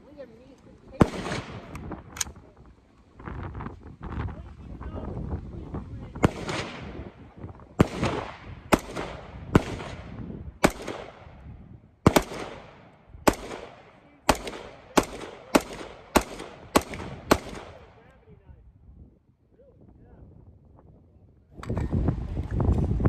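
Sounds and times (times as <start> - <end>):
rifle shots with echo: 0.9 - 2.3, 6.2 - 18.2.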